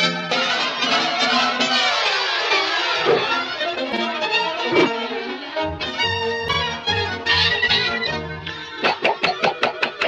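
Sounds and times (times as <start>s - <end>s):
violin music: 2.9s - 8.7s.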